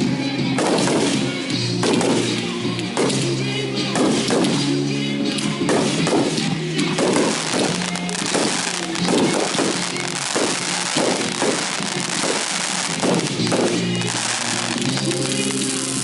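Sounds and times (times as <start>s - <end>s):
music playing: 0.0s - 16.0s
fireworks booming: 0.6s - 4.8s, 5.6s - 16.0s
crackling hiss: 5.9s - 16.0s.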